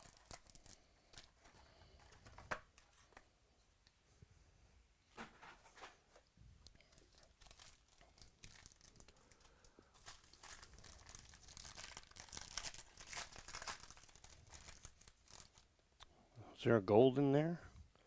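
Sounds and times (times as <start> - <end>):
wrapper tearing and crinkling: 0.0 - 1.3, 6.9 - 15.7.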